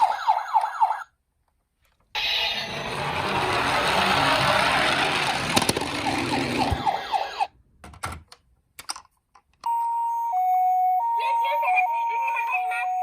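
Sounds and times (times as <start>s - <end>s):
two-tone ambulance siren: 0.0s - 1.1s, 2.2s - 7.5s
toy car rattling and hissing: 2.2s - 7.4s.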